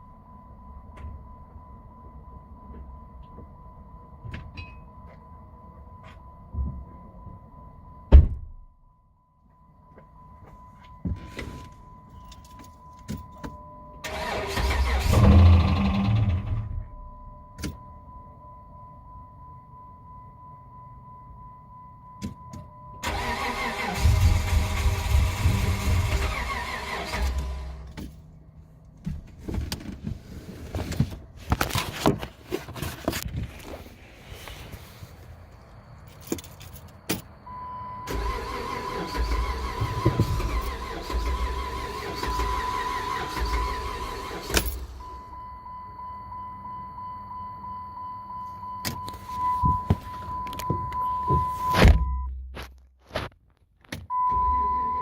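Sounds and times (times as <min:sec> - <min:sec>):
engine cranked by starter: 0:14.0 - 0:16.8, 0:23.0 - 0:28.0, 0:38.1 - 0:45.1.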